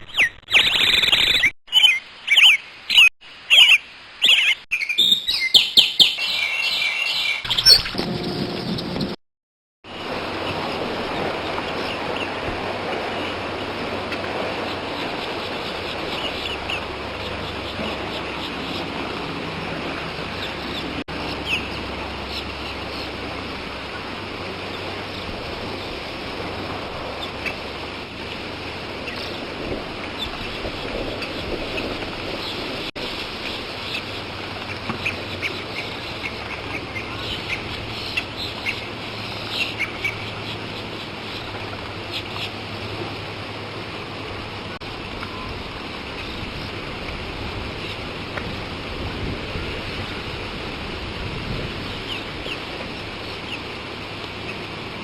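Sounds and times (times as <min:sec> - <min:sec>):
birds calling: 0:00.0 - 0:08.0, 0:10.4 - 0:26.1, 0:27.1 - 0:42.9
outdoor background noise: 0:00.0 - 0:09.2, 0:09.8 - 0:55.0.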